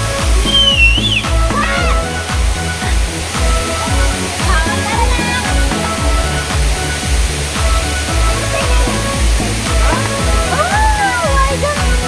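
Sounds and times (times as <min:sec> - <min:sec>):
music with deep bass thumps: 0:00.0 - 0:12.0
waterfall rushing: 0:00.0 - 0:12.0.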